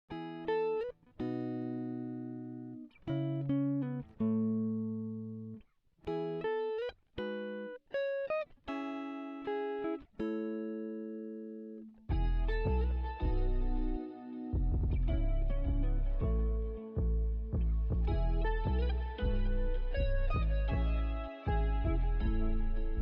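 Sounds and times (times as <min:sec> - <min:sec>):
plucked guitar melody: 0:00.1 - 0:23.0
fuller music with deep bass: 0:12.1 - 0:23.0.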